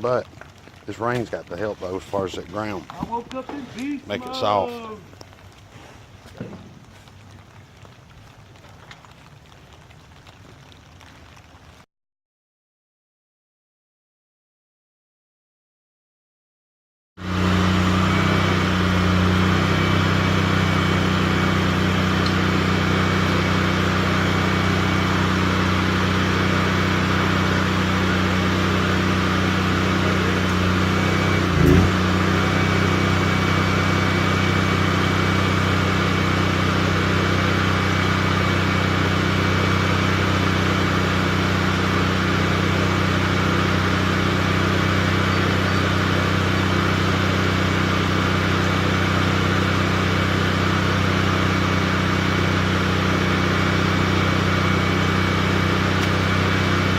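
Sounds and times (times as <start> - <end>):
engine running steadily: 17.2 - 56.9.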